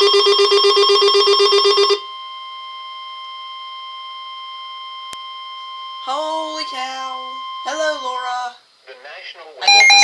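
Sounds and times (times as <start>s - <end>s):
alert alarm rapid beeping: 0.0s - 2.0s, 9.6s - 10.0s
steady alarm tone: 0.0s - 8.6s, 9.6s - 10.0s.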